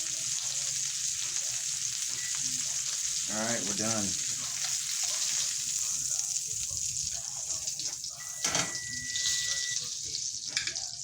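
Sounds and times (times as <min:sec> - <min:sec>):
butter sizzling in a frying pan: 0:00.0 - 0:11.0
high beep: 0:08.2 - 0:09.8.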